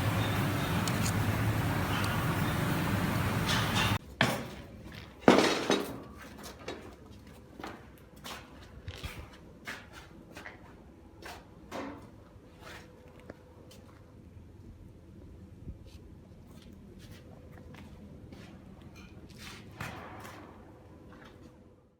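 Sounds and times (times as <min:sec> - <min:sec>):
loud steady noise: 0:00.0 - 0:04.0.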